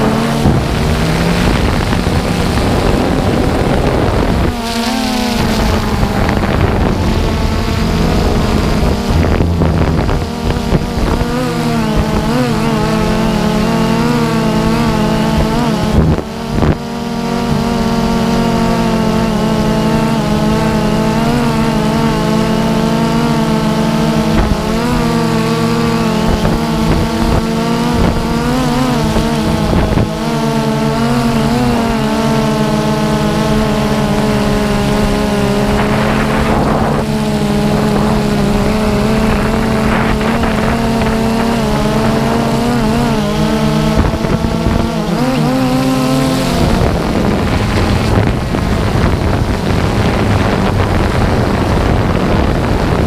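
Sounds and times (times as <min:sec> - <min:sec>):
rushing noise: 0:00.0 - 0:12.2, 0:34.4 - 0:45.2
drone motors humming: 0:00.0 - 0:53.0.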